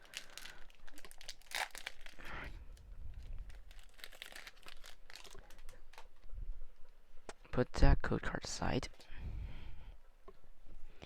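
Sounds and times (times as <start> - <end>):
foil wrapper crinkling: 0.0 - 6.2.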